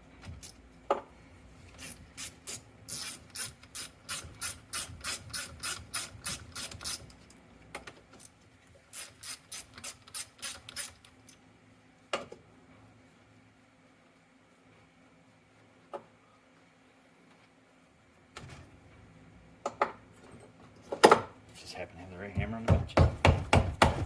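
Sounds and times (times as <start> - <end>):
ratchet wrench clicking: 1.8 - 7.0, 8.9 - 11.0
knock: 22.4 - 24.0.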